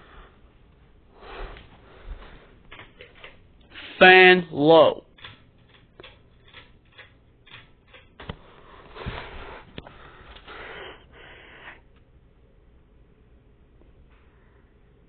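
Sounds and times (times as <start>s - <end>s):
faint low hum: 0.0s - 15.0s
breathy sniffs and breaths: 8.4s - 11.8s.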